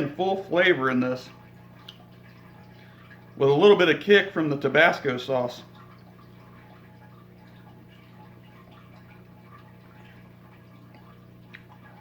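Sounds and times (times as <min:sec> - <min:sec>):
low electrical hum: 0:00.0 - 0:12.0
chewing clicks: 0:10.9 - 0:11.8.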